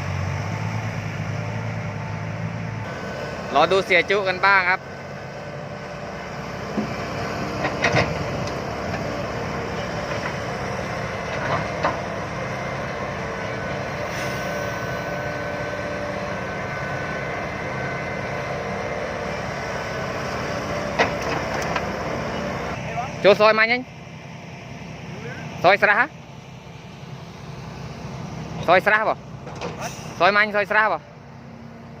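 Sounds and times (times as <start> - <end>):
diesel truck engine running: 0.0 - 32.0
short knocks and clatters: 7.6 - 8.6.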